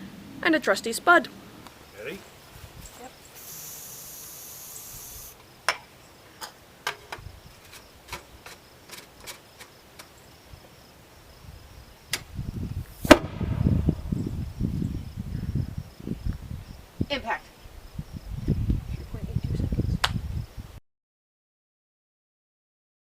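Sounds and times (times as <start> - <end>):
low rumbling: 12.3 - 16.7
potato cannon bang: 13.0 - 13.9.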